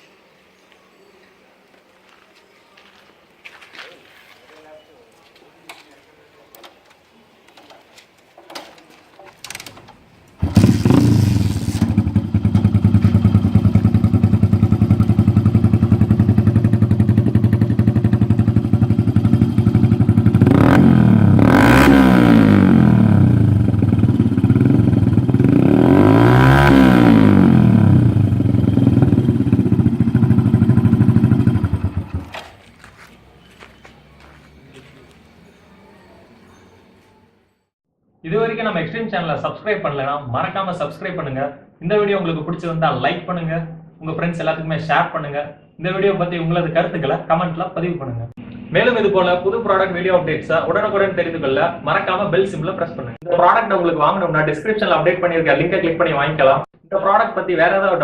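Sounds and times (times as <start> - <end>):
motorcycle engine idling and revving: 10.4 - 36.0.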